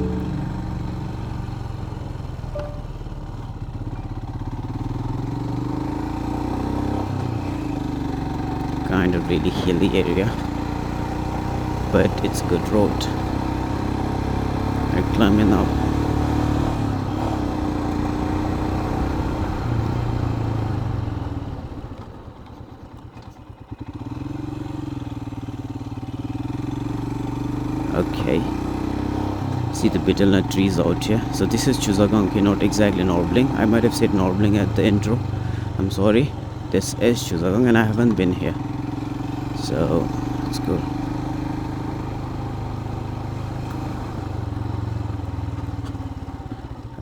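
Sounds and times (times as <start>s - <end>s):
motorcycle engine under load: 0.0s - 47.0s.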